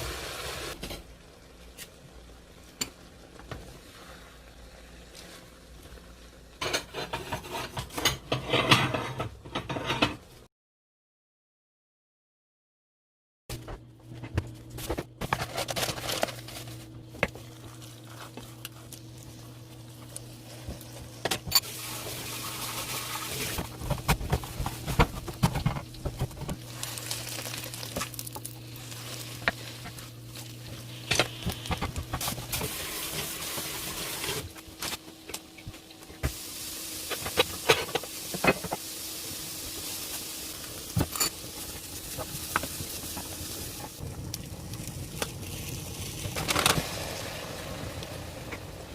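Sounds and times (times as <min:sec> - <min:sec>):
cooking hiss: 0:00.0 - 0:01.0, 0:18.7 - 0:34.6, 0:36.0 - 0:48.9.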